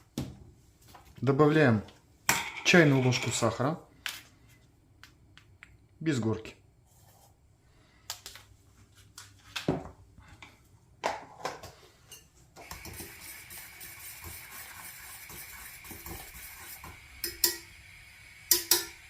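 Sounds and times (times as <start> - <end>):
porridge boiling hiss: 12.6 - 19.0
metal utensil clinking on pot: 17.2 - 17.7, 18.5 - 19.0.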